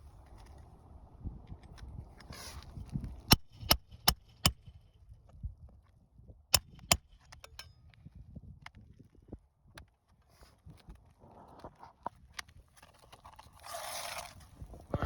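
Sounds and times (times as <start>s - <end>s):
hammer striking nails: 3.3s - 4.6s.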